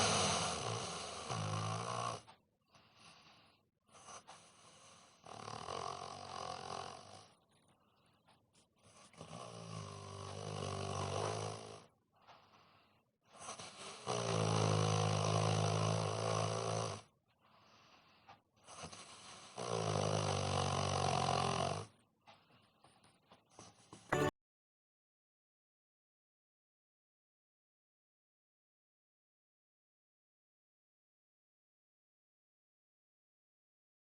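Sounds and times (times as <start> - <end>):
man snoring: 0.0 - 2.4, 4.6 - 7.4, 9.0 - 11.9, 13.5 - 17.1, 18.8 - 22.0
quiet breathing: 0.0 - 24.3.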